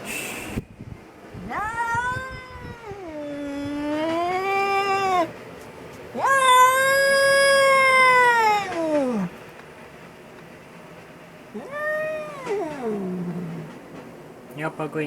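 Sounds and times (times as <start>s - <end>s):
angry cat yowling: 1.4s - 5.4s, 6.1s - 9.4s, 11.5s - 13.8s.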